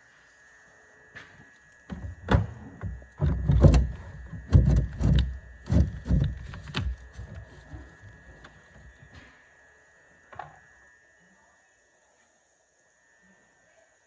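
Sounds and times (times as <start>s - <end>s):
heavy knocks and clunks: 1.9s - 7.9s.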